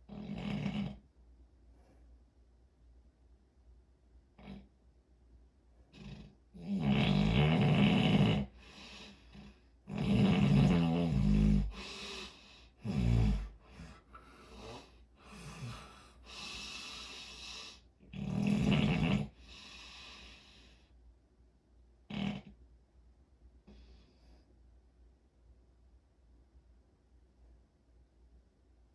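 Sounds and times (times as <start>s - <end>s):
heavy rasping snoring: 0.1s - 1.0s, 6.0s - 19.9s, 22.1s - 22.5s
breathy breaths: 8.4s - 10.7s, 11.6s - 18.0s, 19.3s - 21.0s.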